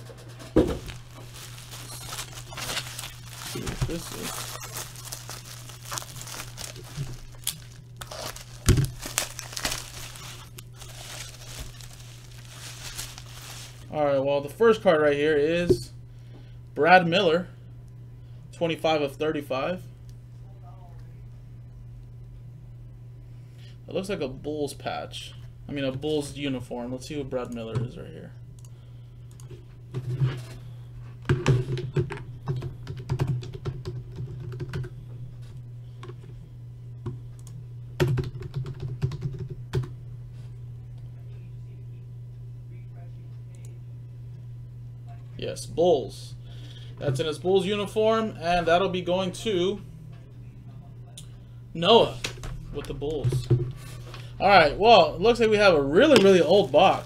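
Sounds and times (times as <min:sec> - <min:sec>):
low electrical hum: 0:00.0 - 0:57.0
plastic wrapping crinkling: 0:00.1 - 0:13.9, 0:56.0 - 0:57.0
computer keyboard typing: 0:37.4 - 0:39.9.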